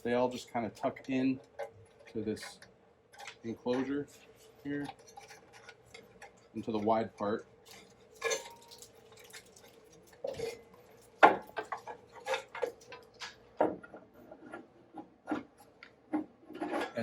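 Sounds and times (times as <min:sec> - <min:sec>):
clicks and knocks of handled wires: 0:07.6 - 0:17.0.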